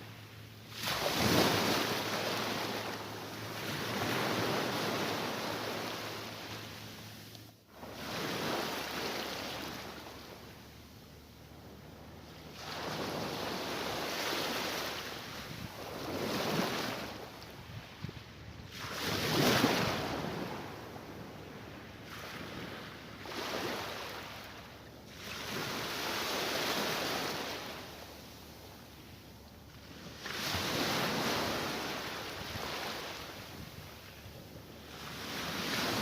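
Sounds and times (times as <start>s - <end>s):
sea waves breaking: 0.0s - 10.7s, 11.6s - 18.1s, 18.7s - 28.0s, 29.8s - 36.0s.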